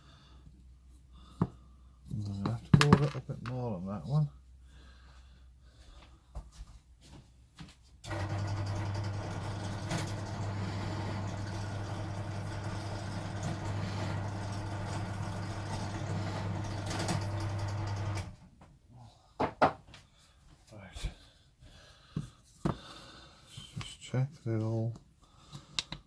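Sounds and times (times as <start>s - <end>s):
pillar drill drilling plywood: 8.1s - 18.4s.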